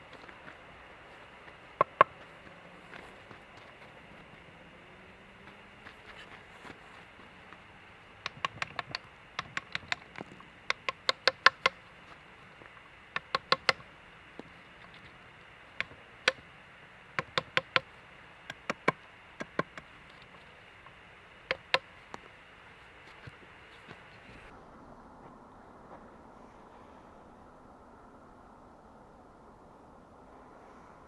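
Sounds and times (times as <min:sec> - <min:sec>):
hand tool striking wood: 0:08.2 - 0:11.8, 0:13.2 - 0:13.8, 0:17.2 - 0:17.9, 0:21.5 - 0:21.9.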